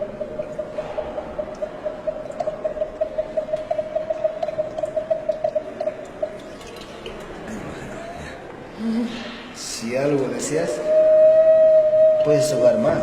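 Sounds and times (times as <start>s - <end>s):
water whistle warbling: 0.0s - 6.4s, 10.6s - 13.0s.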